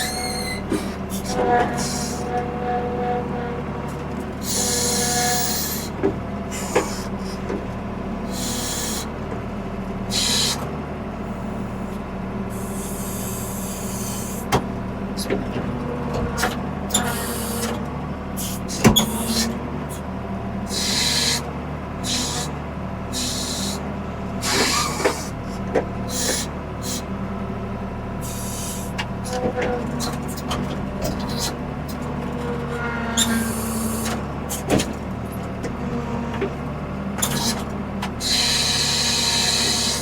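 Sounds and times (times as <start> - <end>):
diesel engine running: 0.0 - 40.0.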